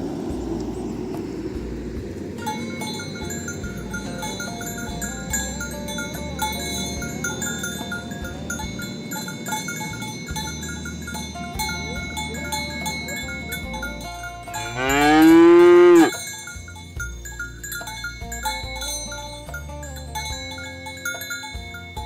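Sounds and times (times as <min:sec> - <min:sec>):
bell-like tinkling: 0:01.5 - 0:22.0
cow mooing: 0:14.5 - 0:16.2.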